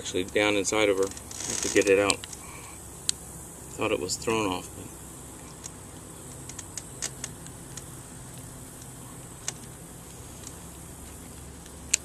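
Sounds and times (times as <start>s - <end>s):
low background hum: 0.0s - 12.0s
small sharp clicks: 1.1s - 3.2s.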